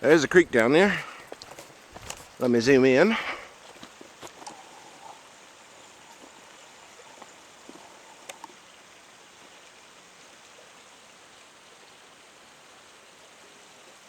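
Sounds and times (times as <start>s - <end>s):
creek water rushing: 0.0s - 14.0s
faint clicks: 3.6s - 5.2s, 6.0s - 8.7s.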